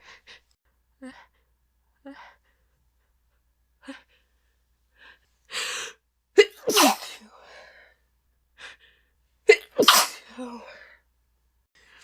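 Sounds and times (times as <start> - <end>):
woman sneezing: 6.4 - 7.3, 9.5 - 10.6.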